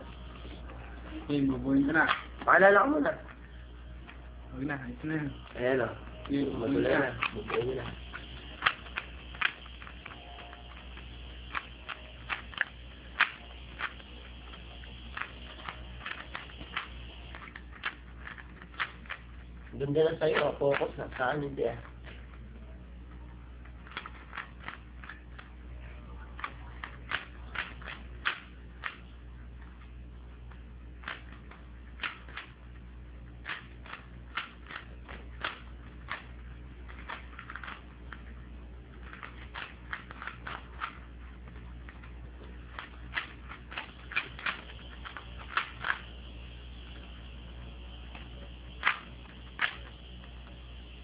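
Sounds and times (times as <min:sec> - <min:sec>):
low hum: 0:00.0 - 0:51.0
plastic puzzle cube clicking: 0:06.8 - 0:14.2, 0:14.8 - 0:19.2, 0:23.8 - 0:25.5, 0:26.4 - 0:29.0, 0:31.0 - 0:32.6, 0:33.4 - 0:38.3, 0:38.9 - 0:46.1.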